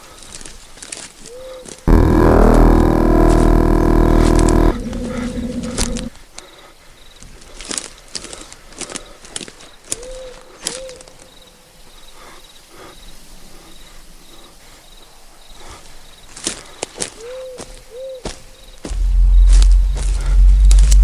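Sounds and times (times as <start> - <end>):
sharp clicks and crunches: 1.9 - 6.1.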